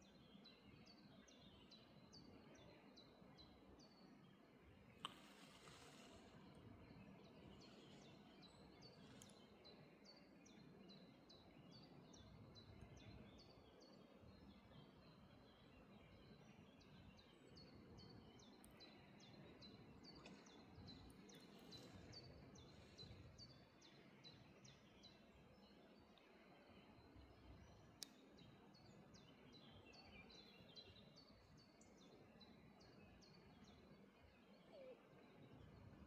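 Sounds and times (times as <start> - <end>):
bird chirping: 26.4 - 35.8.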